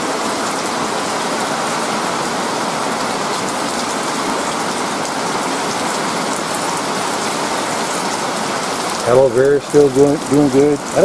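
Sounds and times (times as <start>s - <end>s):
rain falling: 0.0s - 11.0s.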